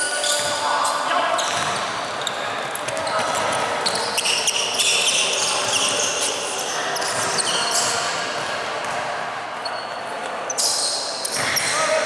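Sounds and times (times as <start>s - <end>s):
sneakers squeaking on floor: 0.0s - 12.0s
basketball bouncing: 1.4s - 2.1s, 8.3s - 9.3s.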